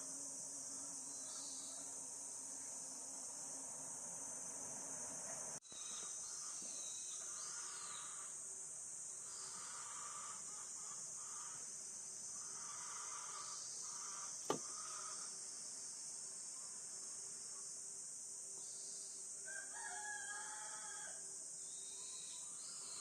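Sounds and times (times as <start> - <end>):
high-pitched insect drone: 0.0 - 15.9.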